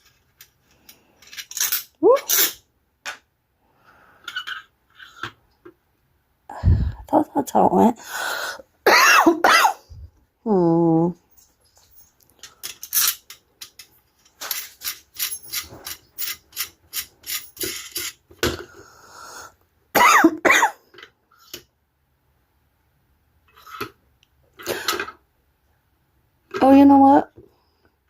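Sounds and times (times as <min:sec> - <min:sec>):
person coughing: 0:08.9 - 0:09.9, 0:20.0 - 0:20.8
small machine parts clicking: 0:12.1 - 0:18.2.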